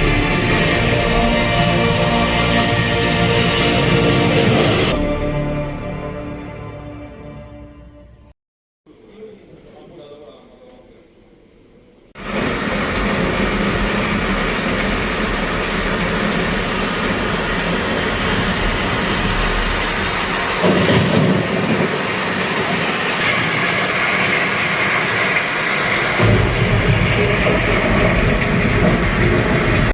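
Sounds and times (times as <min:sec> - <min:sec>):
thunder rumbling: 0:12.2 - 0:29.9.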